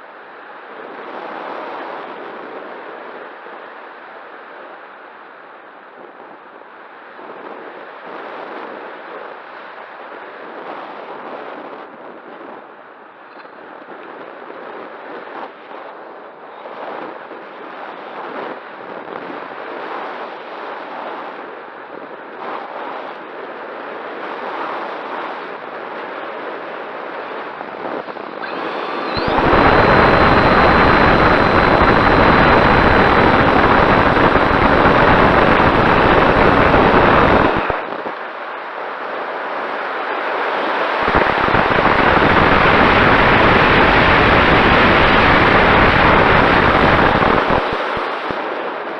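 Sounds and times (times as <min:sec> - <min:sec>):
wind buffeting microphone: 0:13.5 - 0:38.4, 0:39.0 - 0:48.9.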